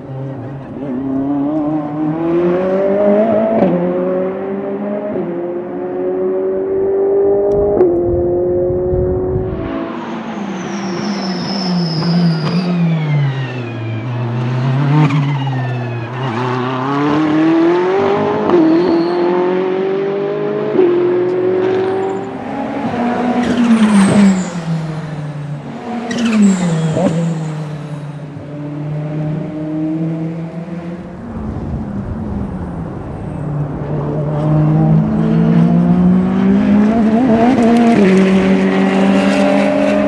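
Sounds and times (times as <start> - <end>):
race car engine accelerating: 0.0 - 40.0
turbo whistle: 10.4 - 13.3, 18.6 - 19.5.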